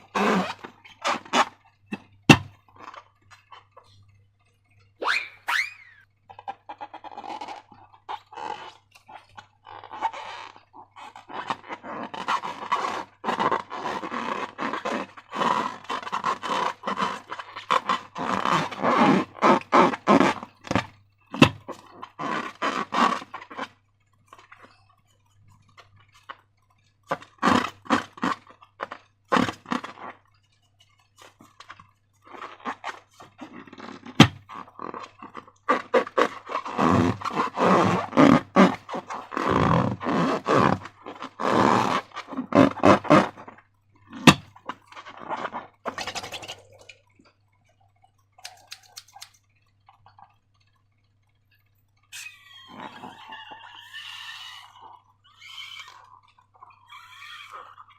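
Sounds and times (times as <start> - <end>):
slime squelching and popping: 0.0 - 4.0, 19.2 - 22.3, 22.9 - 41.4, 42.0 - 56.9
sharp clicks: 48.4 - 49.5.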